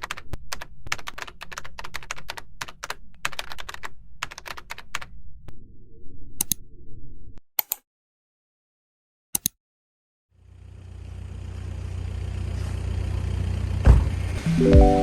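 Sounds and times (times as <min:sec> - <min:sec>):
computer keyboard typing: 0:00.0 - 0:05.1
low hum: 0:05.4 - 0:07.4
single clicks: 0:09.3 - 0:09.6.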